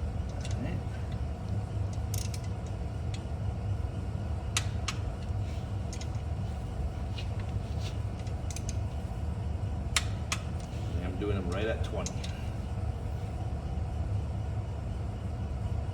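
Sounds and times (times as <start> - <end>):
steady low hum: 0.0 - 15.9
wrench clicks: 1.9 - 3.2, 8.2 - 8.8.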